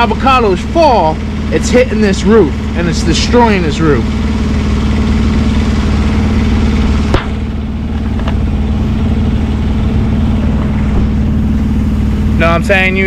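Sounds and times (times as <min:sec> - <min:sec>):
engine idling: 0:00.0 - 0:13.0.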